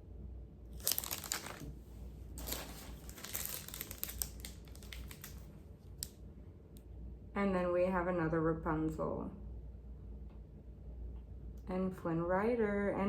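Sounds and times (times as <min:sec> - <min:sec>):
packaging crinkling and rustling: 0:00.7 - 0:06.1.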